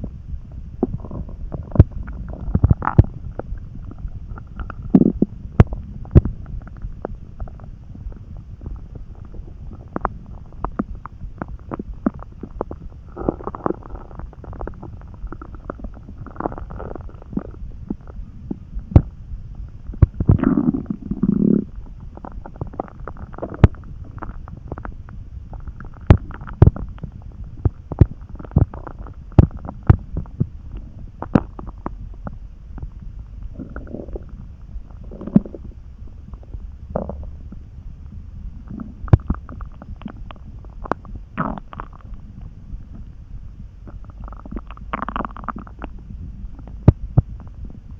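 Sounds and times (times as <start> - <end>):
stomach gurgling: 0.0 - 47.9
stomach pops and clicks: 0.8 - 7.7, 8.6 - 19.1, 19.9 - 37.6, 38.7 - 43.2, 43.9 - 47.8.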